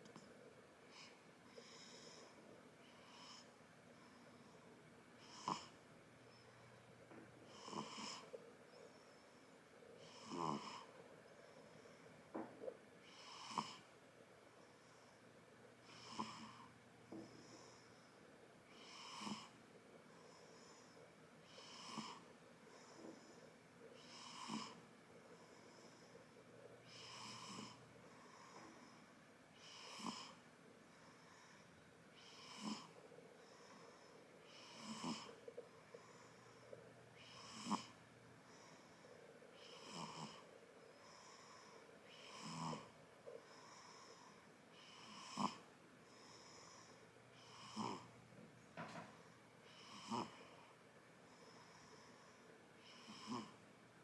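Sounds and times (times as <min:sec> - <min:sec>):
soft breathing: 0:00.0 - 0:54.0
baby snoring: 0:05.2 - 0:05.8, 0:07.5 - 0:08.4, 0:10.0 - 0:10.9, 0:13.1 - 0:13.9, 0:15.9 - 0:16.7, 0:18.7 - 0:19.5, 0:21.5 - 0:22.3, 0:24.0 - 0:24.8, 0:26.9 - 0:28.5, 0:29.6 - 0:30.4, 0:32.2 - 0:33.0, 0:33.8 - 0:35.4, 0:37.2 - 0:37.9, 0:39.6 - 0:40.5, 0:41.2 - 0:43.0, 0:44.1 - 0:45.7, 0:46.4 - 0:48.1, 0:49.7 - 0:50.7, 0:52.9 - 0:53.6.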